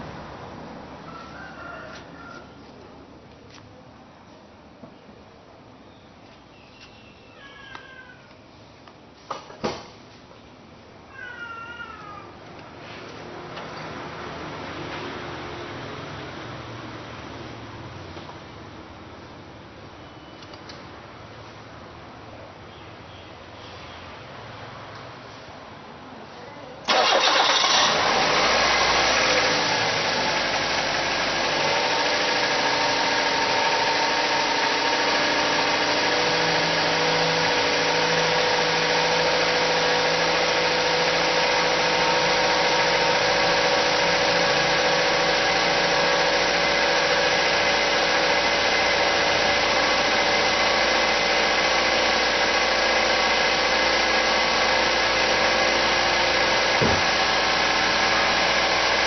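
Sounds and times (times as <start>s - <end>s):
car engine idling: 26.9s - 59.0s.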